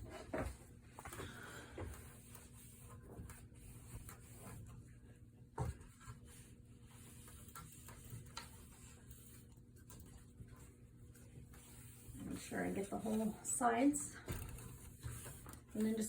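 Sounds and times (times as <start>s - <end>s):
rag rubbing and scraping: 5.9s - 16.0s.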